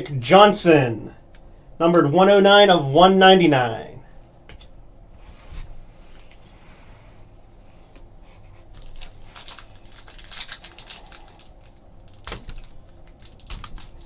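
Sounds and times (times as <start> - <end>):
foil wrappers crinkling and rustling: 8.7 - 14.0.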